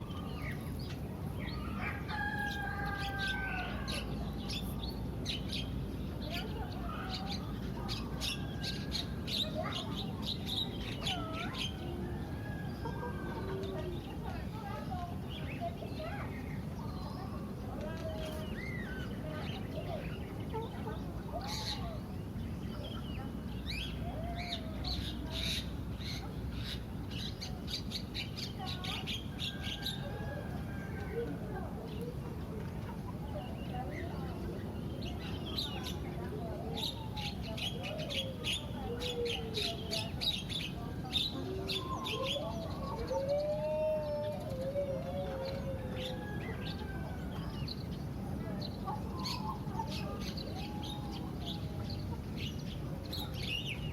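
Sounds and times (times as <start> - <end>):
starlings chirping and squawking: 0.0 - 53.9.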